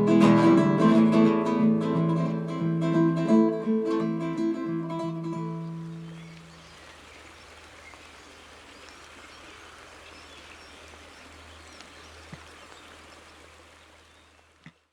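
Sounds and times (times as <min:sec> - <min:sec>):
hiss-like background noise: 0:04.0 - 0:14.9
light ticks: 0:06.3 - 0:06.6, 0:08.8 - 0:09.1, 0:11.7 - 0:12.9.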